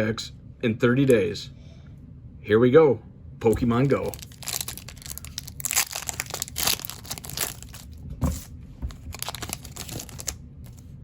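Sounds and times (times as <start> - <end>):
foil wrapper crinkling and tearing: 3.9 - 8.0, 8.9 - 10.9.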